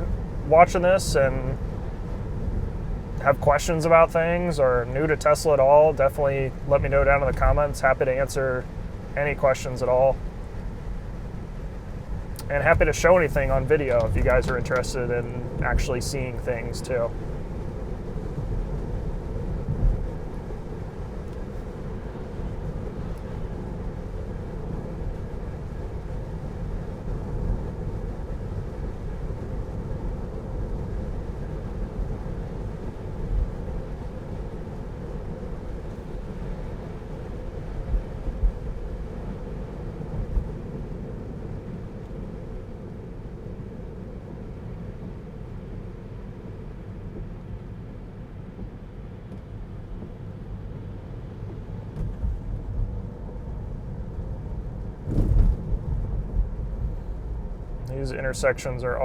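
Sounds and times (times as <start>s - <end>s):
road and tyre rumble: 0.0s - 59.0s
low thumps: 55.0s - 57.6s.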